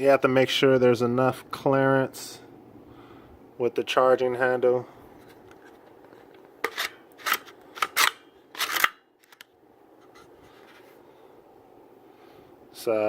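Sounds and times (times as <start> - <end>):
pistol metallic scrapes and clicks: 5.6 - 9.4.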